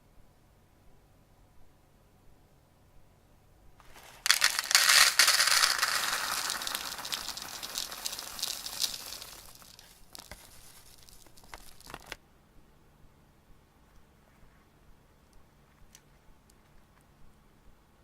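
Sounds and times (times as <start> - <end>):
dense crinkling rattling: 3.8 - 12.2.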